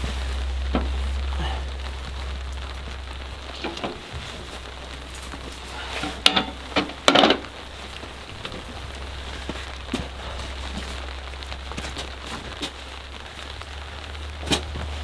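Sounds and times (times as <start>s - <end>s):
light rain falling: 0.0s - 15.0s.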